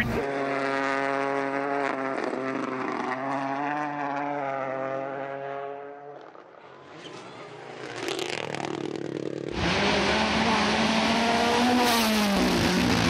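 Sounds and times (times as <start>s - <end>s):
car engine holding steady note: 0.0s - 0.2s.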